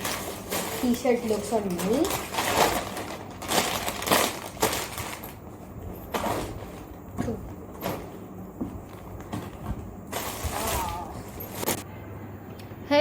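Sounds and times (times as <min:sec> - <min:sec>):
rustling and handling noises: 0:00.0 - 0:11.9.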